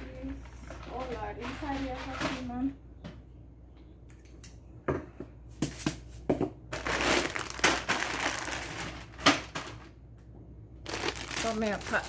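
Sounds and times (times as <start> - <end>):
plastic packaging crinkling: 6.7 - 10.0, 10.8 - 12.0.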